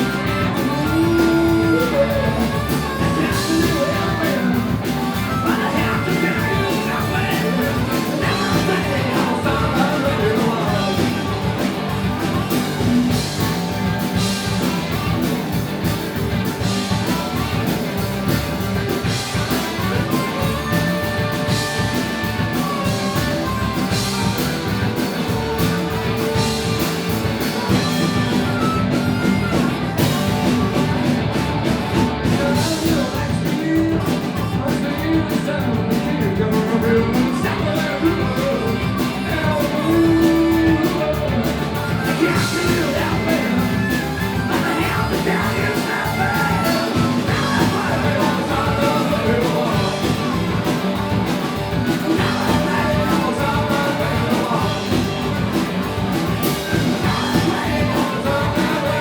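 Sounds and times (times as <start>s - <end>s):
person singing: 0.0s - 15.3s, 31.9s - 59.0s
electric guitar: 0.0s - 59.0s
live rock band: 0.0s - 59.0s.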